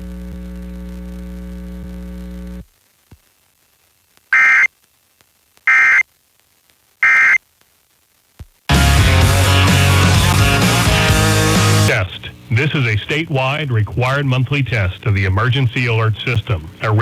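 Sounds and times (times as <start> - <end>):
alert data tone bursts: 4.4 - 4.7, 5.7 - 6.0, 7.0 - 7.4
electrical hum: 4.4 - 4.7, 5.7 - 6.0, 7.0 - 7.4, 8.8 - 17.0.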